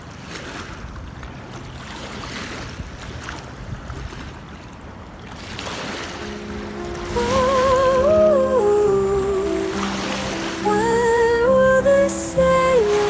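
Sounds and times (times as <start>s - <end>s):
river waves splashing: 0.0s - 13.0s
wind rumble on microphone: 0.1s - 13.0s
faint music: 6.1s - 13.0s.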